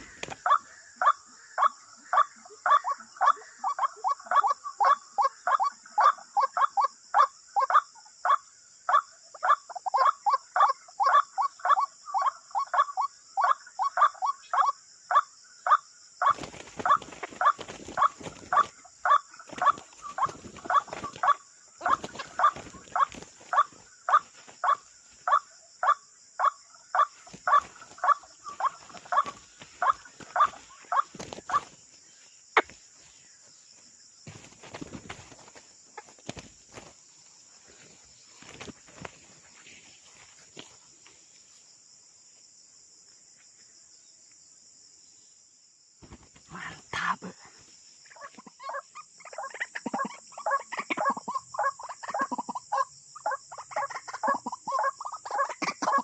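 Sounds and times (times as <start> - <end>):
bird croaking call: 0.0 - 31.8, 48.1 - 56.0
high insect buzz: 15.7 - 49.0.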